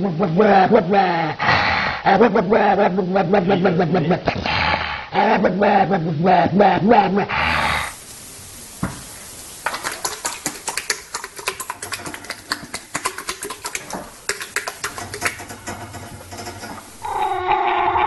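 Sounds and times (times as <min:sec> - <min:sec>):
rapid clicking and tapping: 0:09.6 - 0:17.0
dog howling: 0:17.0 - 0:18.0.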